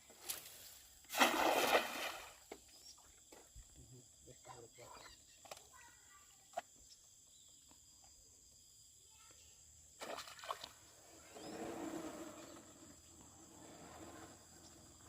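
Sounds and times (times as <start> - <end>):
insects chirring: 0.0 - 15.0
noisy rustle or splash: 0.3 - 2.4.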